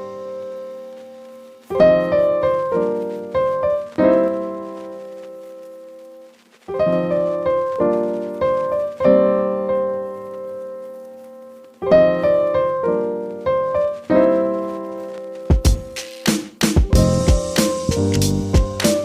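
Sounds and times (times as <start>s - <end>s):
piano chords ringing: 0.0s - 5.4s, 6.7s - 16.0s, 16.8s - 19.0s
drum beat: 15.5s - 19.0s.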